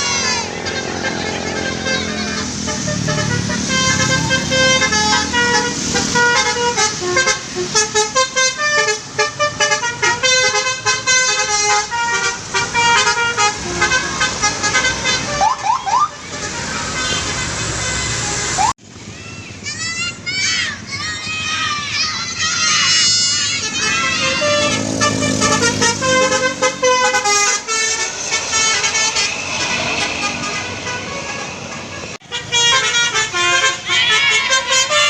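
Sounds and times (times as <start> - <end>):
multi-note bus horn tune: 0.0 - 18.7, 22.8 - 35.0
bus engine: 0.0 - 35.0.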